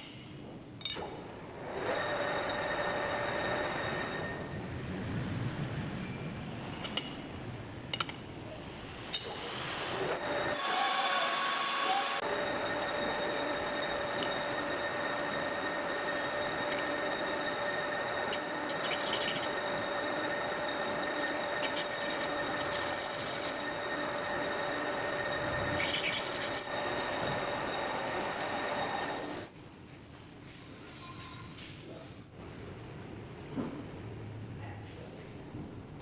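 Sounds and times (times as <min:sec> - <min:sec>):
metal lathe whining: 0:01.6 - 0:04.6, 0:09.4 - 0:29.5
high-pitched scraping: 0:10.1 - 0:29.5.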